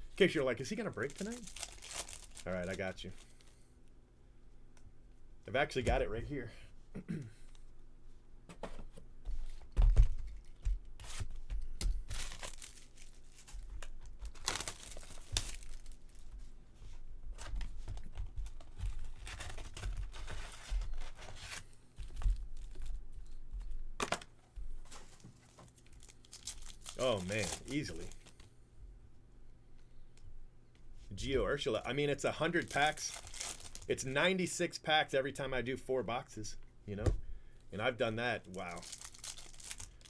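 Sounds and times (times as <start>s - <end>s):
wrappers tearing and crinkling: 0.6s - 3.6s, 12.0s - 16.4s, 18.8s - 22.9s, 24.9s - 28.4s, 32.6s - 34.0s, 38.4s - 40.0s.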